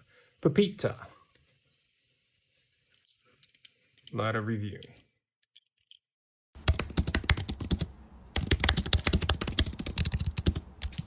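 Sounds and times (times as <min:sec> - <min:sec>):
computer keyboard typing: 0:06.6 - 0:11.0.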